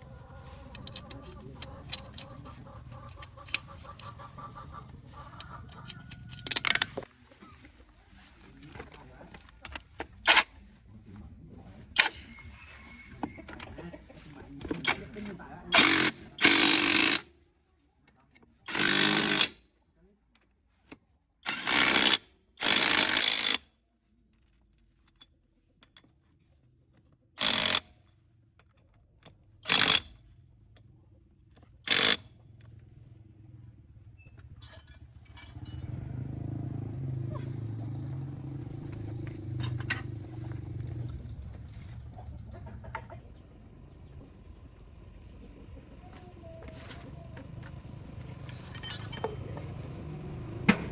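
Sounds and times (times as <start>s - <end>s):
power tool bursts: 15.7s - 17.2s, 18.7s - 19.6s, 21.4s - 23.6s, 27.4s - 27.8s, 31.9s - 32.2s.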